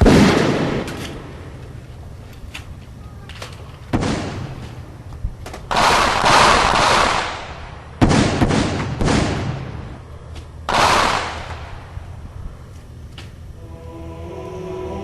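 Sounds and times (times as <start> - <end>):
gunshot blasts: 0.0 - 1.0, 3.9 - 4.6, 5.7 - 9.9, 10.7 - 11.8.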